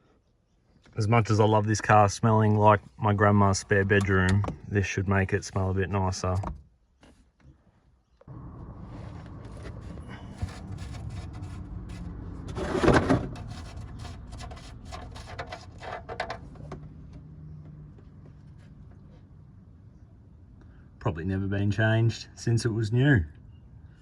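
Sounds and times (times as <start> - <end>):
low steady hum: 8.2 - 16.8
scraping rush: 8.3 - 16.1.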